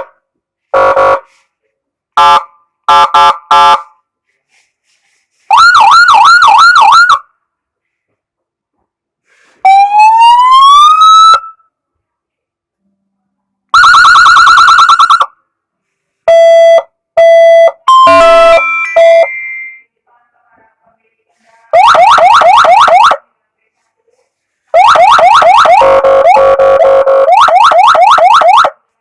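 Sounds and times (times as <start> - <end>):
police siren wail and yelp: 5.5 - 7.3, 9.6 - 11.6, 13.7 - 15.3, 17.5 - 19.5, 21.7 - 23.3, 24.7 - 28.8
stepped siren tones: 9.6 - 11.6, 16.3 - 19.8.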